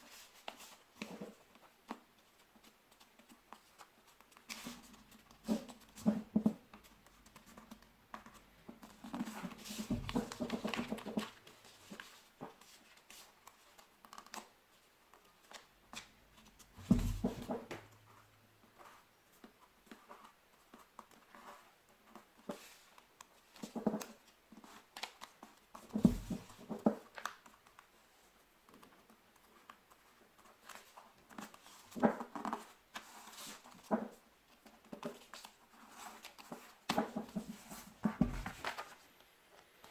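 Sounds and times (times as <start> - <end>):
paper crinkling and rustling: 0.0 - 17.6, 18.7 - 28.0, 28.7 - 39.9
dull thumps on table: 16.8 - 17.9, 38.0 - 38.6.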